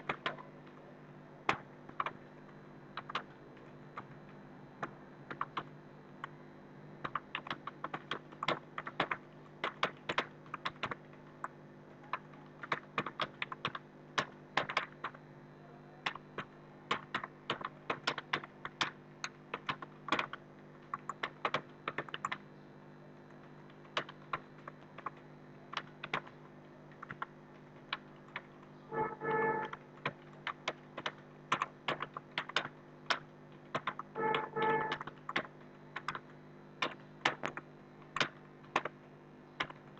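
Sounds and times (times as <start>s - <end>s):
fast typing on keyboard: 0.0s - 0.4s, 5.3s - 5.7s, 7.0s - 15.2s, 16.0s - 22.4s, 23.7s - 39.0s, 39.6s - 39.9s
steady low hum: 0.0s - 39.9s.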